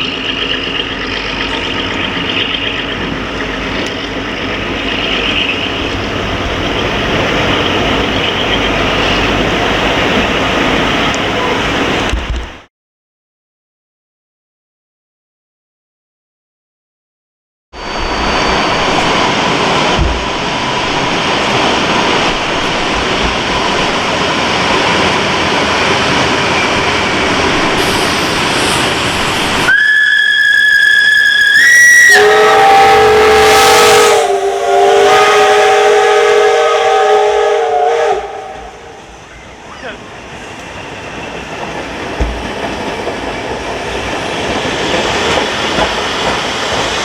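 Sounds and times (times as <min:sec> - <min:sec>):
steam hissing: 0:00.0 - 0:12.2, 0:17.8 - 0:47.0
lower multi-note steam whistle: 0:17.8 - 0:20.7, 0:27.8 - 0:39.6
high steam whistle blast: 0:17.8 - 0:21.3, 0:27.7 - 0:39.5.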